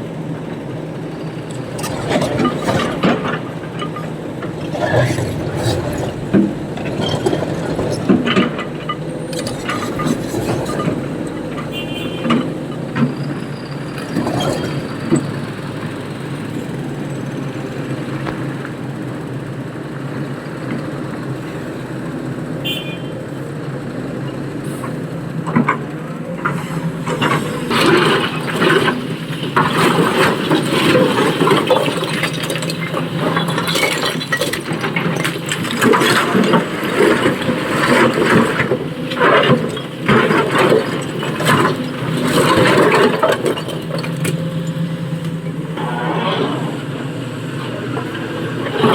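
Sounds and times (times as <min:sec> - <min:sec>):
excavator diesel engine running: 0:00.0 - 0:48.9.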